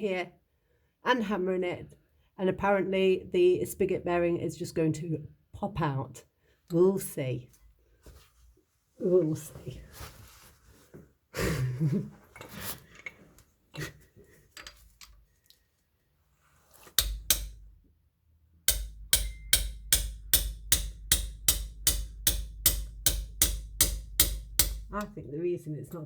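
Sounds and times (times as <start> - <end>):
hammer blows on metal: 17.0 - 17.7, 18.7 - 25.0.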